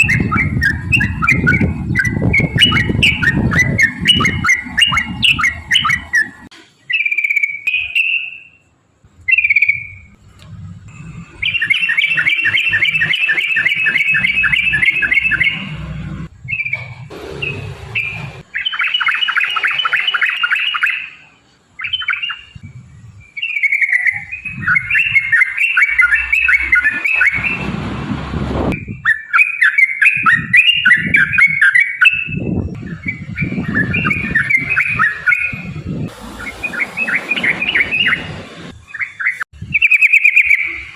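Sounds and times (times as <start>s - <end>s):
bird whistled phrases: 0.0s - 8.6s, 9.3s - 10.1s, 11.4s - 15.7s, 18.0s - 22.6s, 23.2s - 27.6s, 28.8s - 35.7s, 38.9s - 40.9s
bird singing chattering notes: 0.0s - 10.2s, 10.9s - 27.6s, 28.7s - 40.9s.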